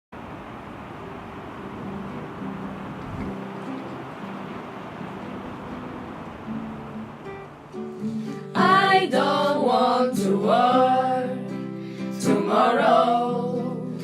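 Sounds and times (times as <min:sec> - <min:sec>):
guitar accompaniment: 0:01.6 - 0:14.0
person singing: 0:08.2 - 0:14.0.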